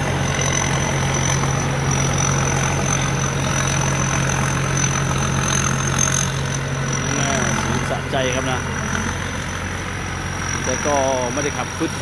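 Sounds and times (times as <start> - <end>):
combine harvester engine running: 0.0 - 12.0
high whine: 0.0 - 12.0.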